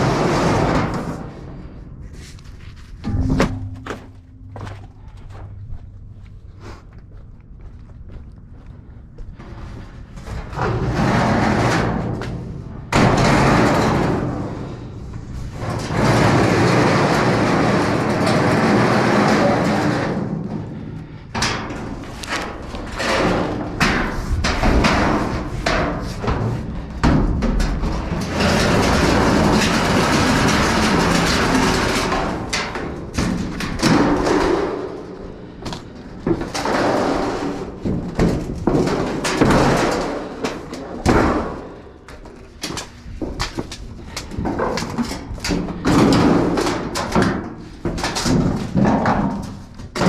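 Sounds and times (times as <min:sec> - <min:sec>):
bangs and thuds in metal dumpster: 0:00.0 - 0:01.7, 0:03.0 - 0:05.4, 0:10.3 - 0:43.6, 0:44.2 - 0:50.0
scraping and rattling: 0:00.0 - 0:05.6, 0:10.1 - 0:50.0.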